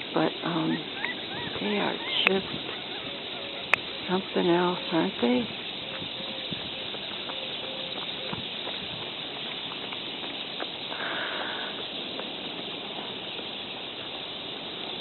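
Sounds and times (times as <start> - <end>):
water bird calls: 0.0 - 12.0
steady outdoor hiss: 0.0 - 15.0.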